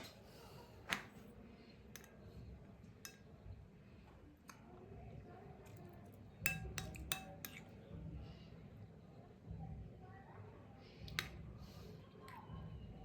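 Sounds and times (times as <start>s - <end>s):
utensils clinking against dishes: 2.0s - 2.2s, 3.0s - 3.3s, 6.4s - 7.7s.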